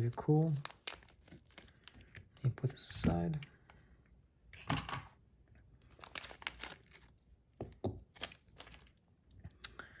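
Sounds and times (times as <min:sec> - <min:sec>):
packaging crinkling and tearing: 0:00.0 - 0:02.2, 0:05.8 - 0:07.2, 0:08.1 - 0:09.0.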